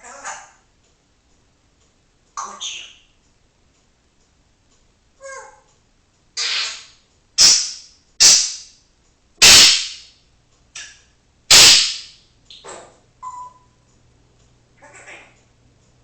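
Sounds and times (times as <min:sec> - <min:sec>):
parrot making hissy bursts: 0:06.4 - 0:08.6, 0:09.4 - 0:10.0, 0:11.5 - 0:12.1.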